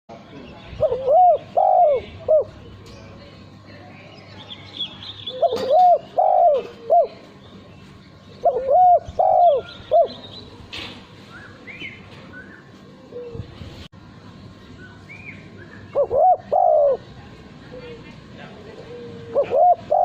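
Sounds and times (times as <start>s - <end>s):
small birds chirping: 0.1s - 13.6s, 14.2s - 20.0s
dove cooing: 0.8s - 2.6s, 5.3s - 7.3s, 8.4s - 10.3s, 12.9s - 13.6s, 15.9s - 20.0s.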